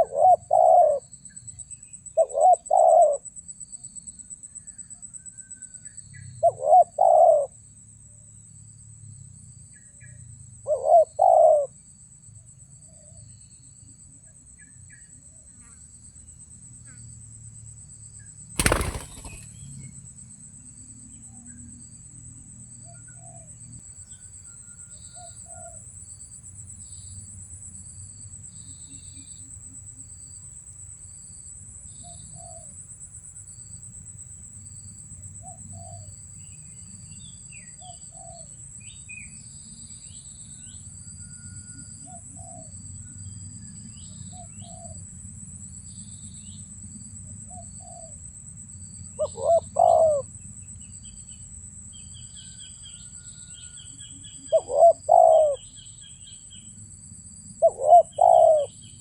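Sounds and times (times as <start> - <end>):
doves cooing: 0.0 - 1.0, 2.2 - 3.2, 6.4 - 7.5, 10.7 - 11.7, 18.6 - 19.5, 49.2 - 50.2, 54.5 - 55.6, 57.6 - 58.7
high insect trill: 10.8 - 59.0
small birds chirping: 18.6 - 19.9.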